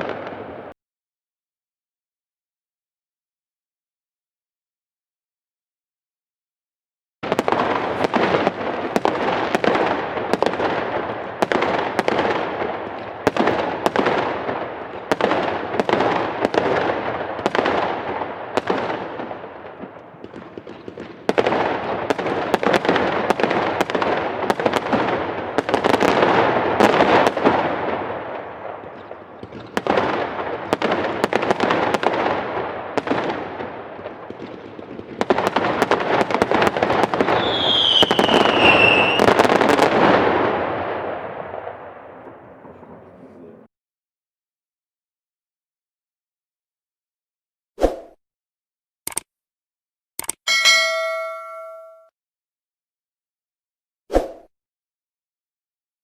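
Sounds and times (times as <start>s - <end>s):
fireworks cracking and banging: 0.0s - 0.8s, 7.2s - 43.7s.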